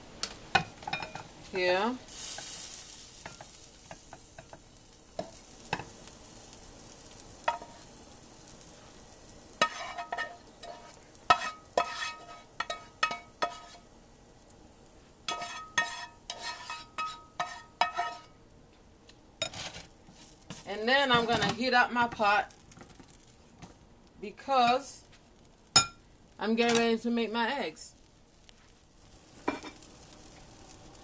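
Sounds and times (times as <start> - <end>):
utensil scraping and knocking pan: 9.6 - 13.8, 15.3 - 18.3.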